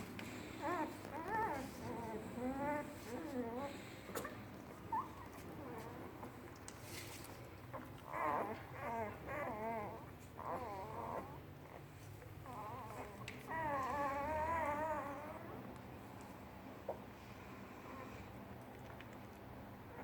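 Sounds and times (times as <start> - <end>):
puppies whimpering: 0.4 - 6.4, 8.0 - 15.6.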